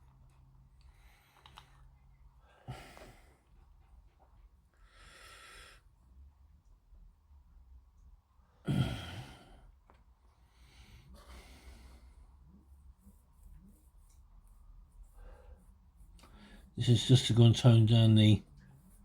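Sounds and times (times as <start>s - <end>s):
heavy sigh: 8.7s - 9.6s.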